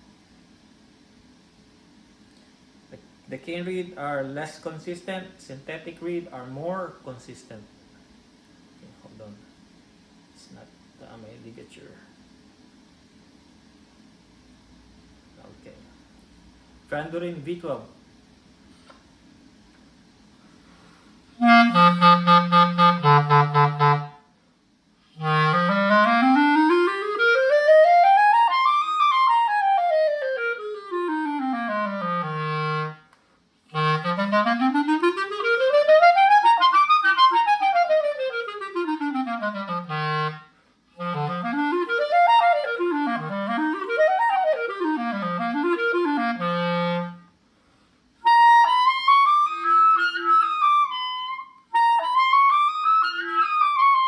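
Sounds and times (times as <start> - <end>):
clarinet playing scales and arpeggios: 21.4 - 24.2, 25.1 - 33.1, 33.7 - 47.3, 48.2 - 54.0.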